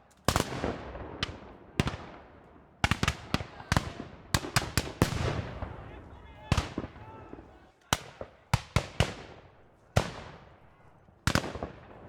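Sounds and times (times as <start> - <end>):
gunshots echoing: 2.8 - 5.8.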